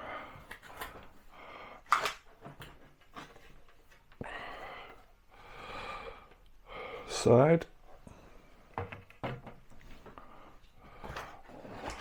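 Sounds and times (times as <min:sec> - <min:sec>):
cardboard rustling: 0:09.0 - 0:12.0.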